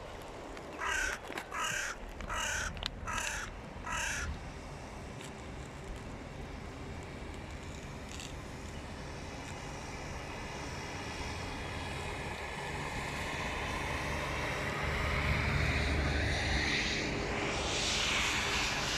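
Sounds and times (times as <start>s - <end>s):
crow cawing: 0.8s - 4.3s.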